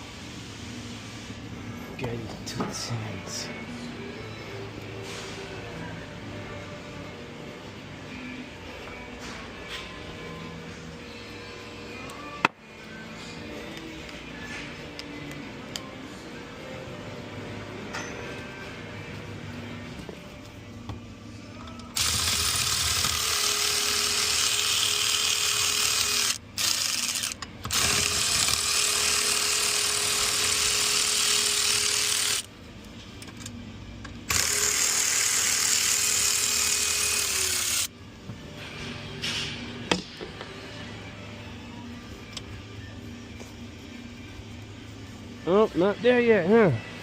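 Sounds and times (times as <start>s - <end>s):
electric power tool whine: 22.0s - 32.5s, 34.3s - 37.9s.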